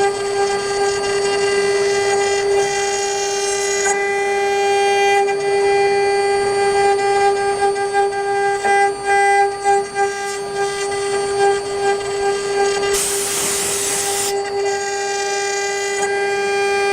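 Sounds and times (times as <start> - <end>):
lathe spindle whining: 7.0 - 16.3
burst of hiss: 12.9 - 14.3.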